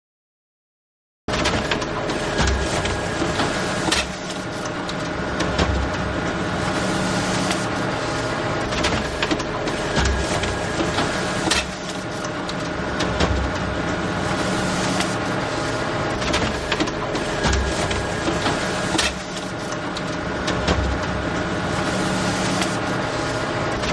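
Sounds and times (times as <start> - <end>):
photocopier whirring: 1.5 - 23.9
photocopier clicks and thumps: 16.1 - 21.2.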